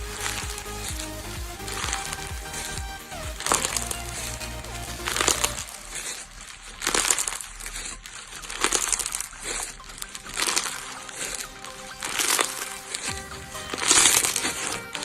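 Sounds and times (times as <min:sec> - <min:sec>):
slime crackling and popping: 0:05.1 - 0:15.0.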